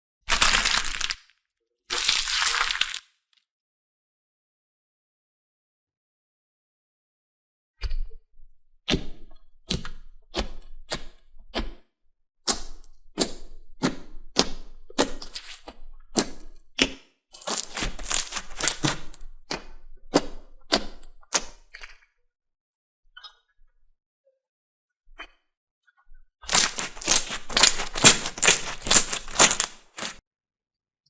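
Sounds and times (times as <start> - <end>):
slime crunching clicks: 26.5 - 30.2.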